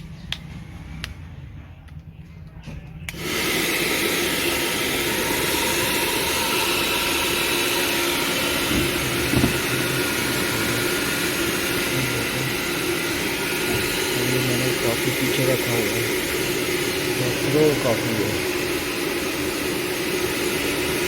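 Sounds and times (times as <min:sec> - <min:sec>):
hair dryer switch click: 0:03.1 - 0:03.3
hair dryer blowing whir: 0:03.1 - 0:21.0.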